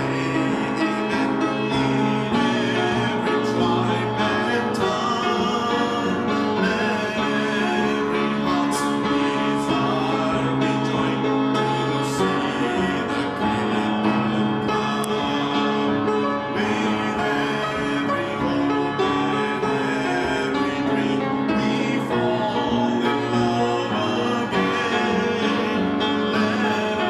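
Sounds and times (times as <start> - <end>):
people singing: 0.0 - 27.0
worship band with keyboard: 0.0 - 27.0.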